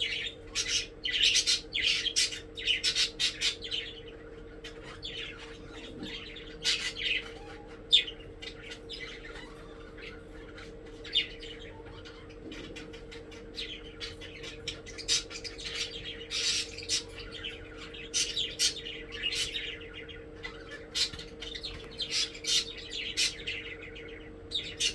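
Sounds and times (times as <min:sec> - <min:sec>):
budgerigars chirping and squawking: 0:00.0 - 0:24.9
faint steady hum: 0:00.0 - 0:24.9.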